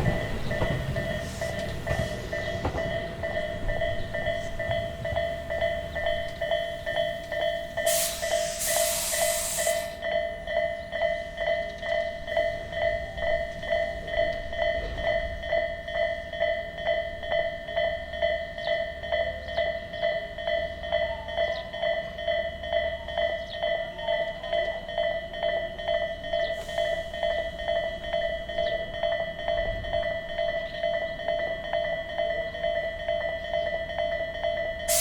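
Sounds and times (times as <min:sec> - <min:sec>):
level crossing alarm bell ringing: 0:00.0 - 0:35.0
low rumble of train: 0:00.0 - 0:35.0
hissing air burst: 0:07.8 - 0:10.0.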